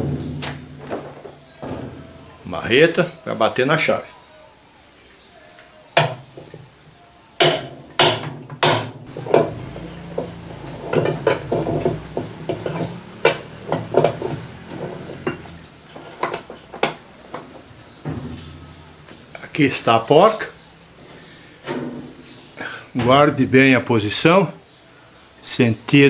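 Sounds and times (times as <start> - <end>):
sledgehammer striking metal: 0.0 - 2.4, 7.4 - 17.0, 17.9 - 19.3
metallic clinks and knocks: 7.4 - 19.3.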